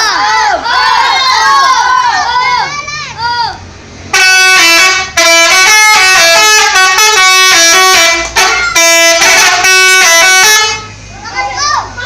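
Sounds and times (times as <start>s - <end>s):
musical air horn melody: 4.1s - 10.9s.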